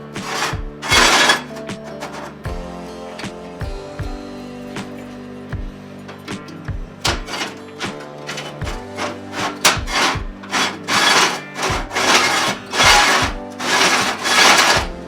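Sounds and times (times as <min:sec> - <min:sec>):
rasping filing or sawing strokes: 0:00.0 - 0:02.5, 0:07.0 - 0:15.0
background music with steady beat: 0:00.0 - 0:15.0.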